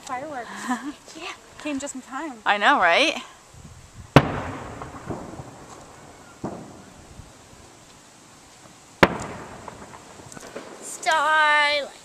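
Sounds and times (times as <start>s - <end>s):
fireworks shells bursting: 4.1s - 8.0s, 8.6s - 11.3s.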